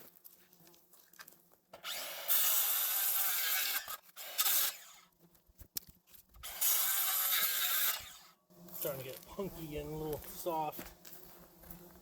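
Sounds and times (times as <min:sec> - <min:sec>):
reciprocating saw rasping: 0:01.8 - 0:05.1, 0:06.4 - 0:08.4.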